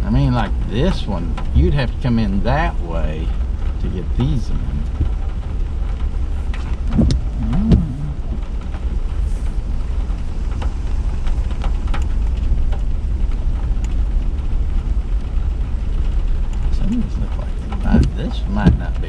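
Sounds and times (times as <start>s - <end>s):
vehicle rumble from inside cab: 0.0s - 19.0s
light ticks and taps: 16.5s - 19.0s.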